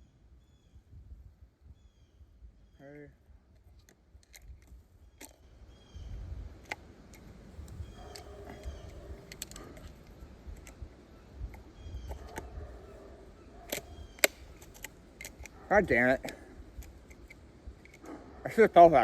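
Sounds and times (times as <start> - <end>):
metallic clicks and rattles: 8.0 - 10.8.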